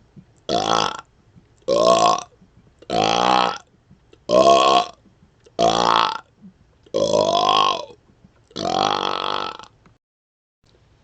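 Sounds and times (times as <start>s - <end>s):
man belching loudly: 0.5s - 1.1s, 1.7s - 3.7s, 4.3s - 5.0s, 5.6s - 6.3s, 6.9s - 9.7s.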